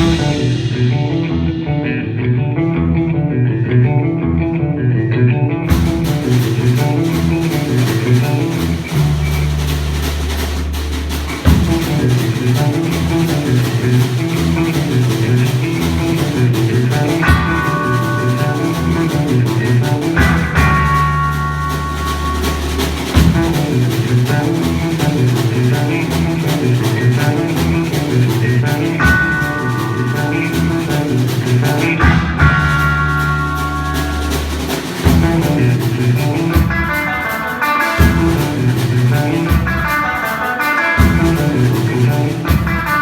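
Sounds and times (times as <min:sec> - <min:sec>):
cymbals: 0:00.0 - 0:01.5, 0:05.7 - 0:43.0
drum kit: 0:00.0 - 0:04.1, 0:05.6 - 0:43.0
guitar and bass riff: 0:00.0 - 0:43.0.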